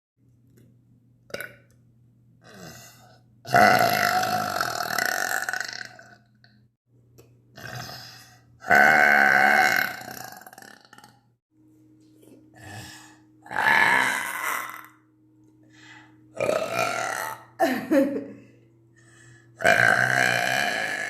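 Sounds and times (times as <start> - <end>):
woman burping: 3.5 - 6.2, 13.4 - 15.0, 16.4 - 18.4, 19.6 - 21.0
faint steady hum: 9.9 - 21.0.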